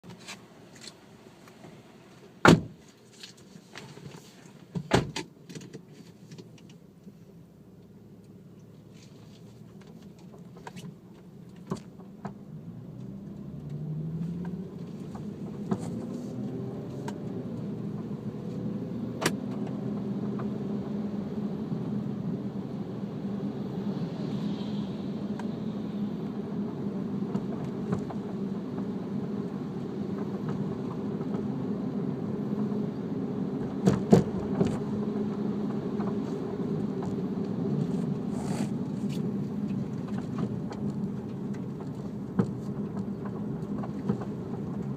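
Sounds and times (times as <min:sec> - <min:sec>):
road and engine hum: 0:00.0 - 0:44.9
suspension clunks: 0:08.3 - 0:21.0, 0:26.8 - 0:44.9.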